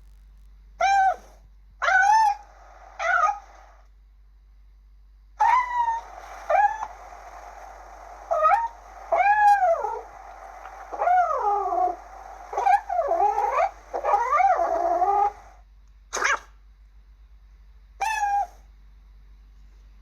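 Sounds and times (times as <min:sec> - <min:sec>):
kitten meowing: 0:18.0 - 0:18.6.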